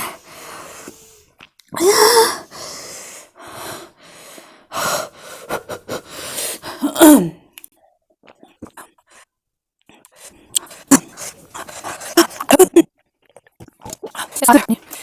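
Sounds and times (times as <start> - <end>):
woman gasping and wheezing: 0.0 - 7.4.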